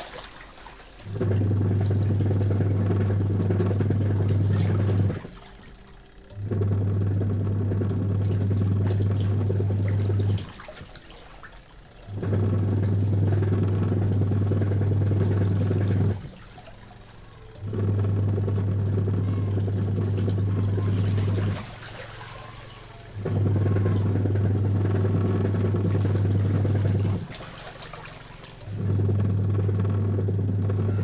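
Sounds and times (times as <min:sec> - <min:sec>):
factory machine humming: 0:11.9 - 0:31.0.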